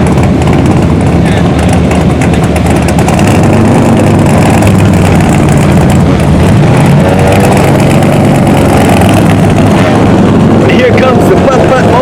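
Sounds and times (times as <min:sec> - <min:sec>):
car engines rumbling: 0:00.0 - 0:12.0.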